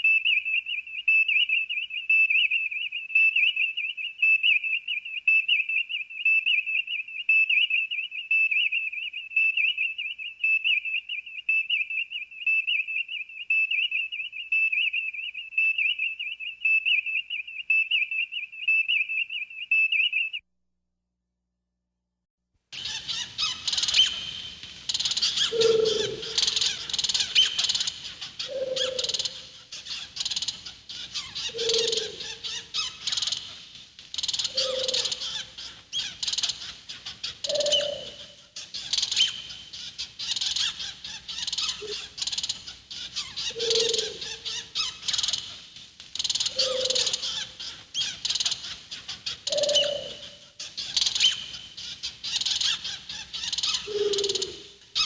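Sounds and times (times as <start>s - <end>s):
high bird chirping: 22.8s - 45.6s, 46.2s - 55.0s
low hooting bird call: 25.2s - 29.8s, 31.2s - 33.0s, 34.5s - 36.1s, 37.2s - 38.5s, 41.4s - 42.2s, 43.2s - 45.0s, 46.5s - 47.6s, 49.4s - 50.5s, 53.7s - 55.0s.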